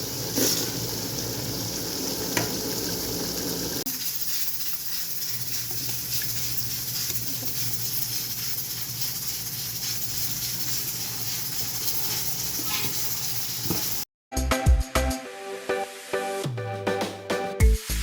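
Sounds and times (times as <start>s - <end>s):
food sizzling in hot oil: 0.0s - 14.1s
music: 14.3s - 18.0s.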